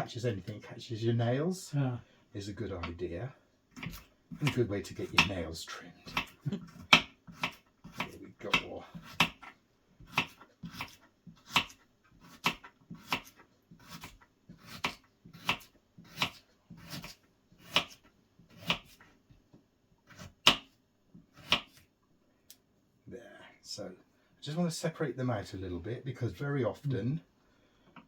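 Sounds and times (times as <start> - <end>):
knife chopping carrot on board: 3.7 - 5.4, 6.0 - 19.0, 20.0 - 21.8.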